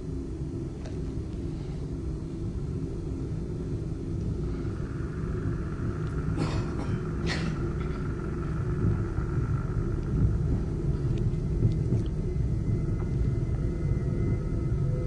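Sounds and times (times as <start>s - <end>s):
low rumbling drone: 0.0s - 15.0s
faint high steady tone: 12.3s - 15.0s.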